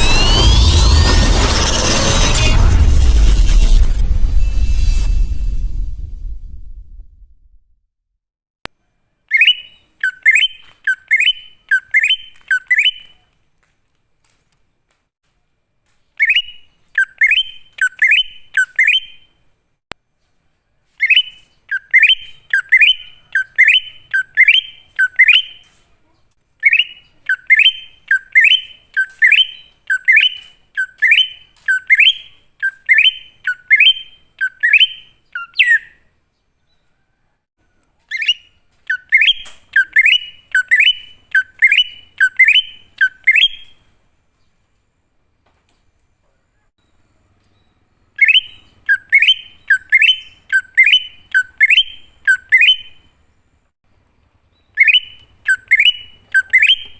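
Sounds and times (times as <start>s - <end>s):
bird down-slurred whistles: 38.1s - 43.8s, 48.2s - 53.0s, 54.6s - 56.9s.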